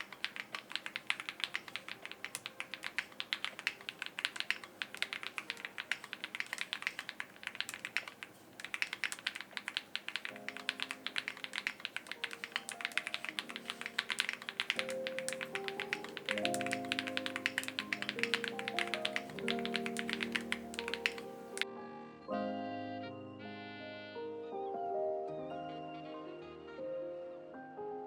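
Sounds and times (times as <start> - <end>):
mechanical keyboard typing: 0.0 - 21.6
soft background music: 10.2 - 28.0.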